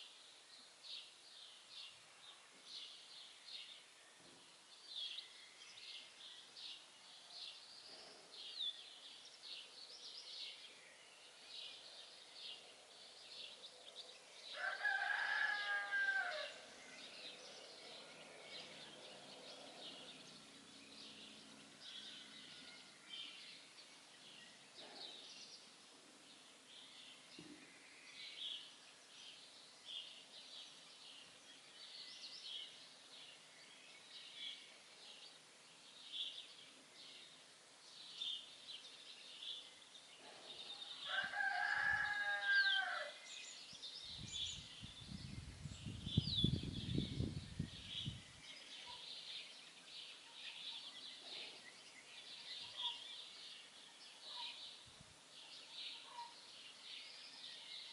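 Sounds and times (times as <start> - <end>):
songbirds chirping: 0.0 - 57.9
rooster crowing: 14.6 - 16.6, 41.0 - 43.2.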